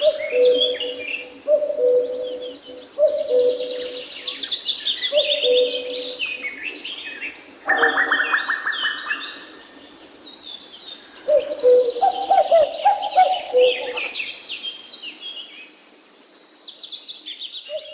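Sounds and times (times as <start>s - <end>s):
birds singing: 0.0s - 17.9s
bird chirps: 0.3s - 17.9s
fast high bird trill: 7.7s - 9.6s.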